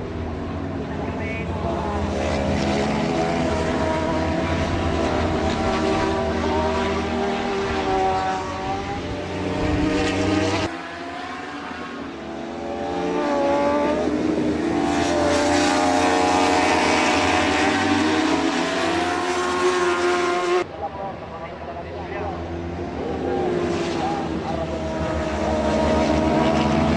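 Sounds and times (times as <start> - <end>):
racing motorcycle engines revving: 0.0 - 26.9.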